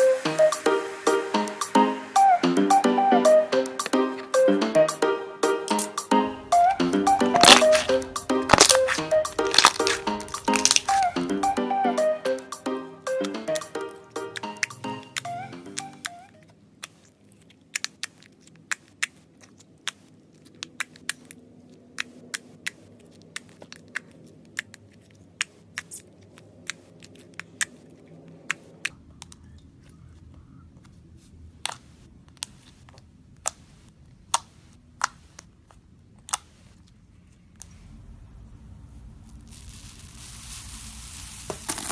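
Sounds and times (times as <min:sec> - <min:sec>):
slime crackling and popping: 0:07.4 - 0:11.2, 0:39.2 - 0:41.9.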